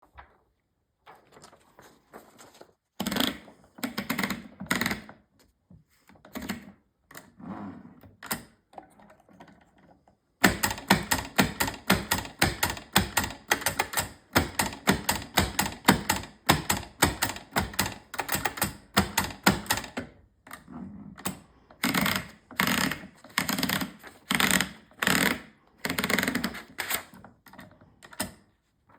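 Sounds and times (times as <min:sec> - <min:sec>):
typewriter keys clacking: 0:10.4 - 0:20.0.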